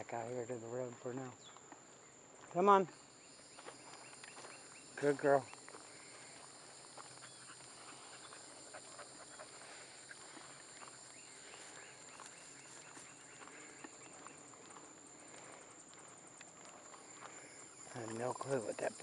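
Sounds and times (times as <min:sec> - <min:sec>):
footsteps on road: 0:00.2 - 0:19.0
insect buzz: 0:01.0 - 0:19.0.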